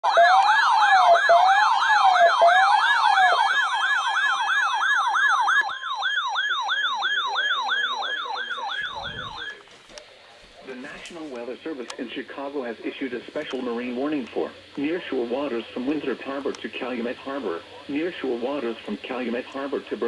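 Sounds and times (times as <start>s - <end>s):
slow rising and falling siren: 0.0s - 9.6s
electronic siren yelp: 0.0s - 9.7s.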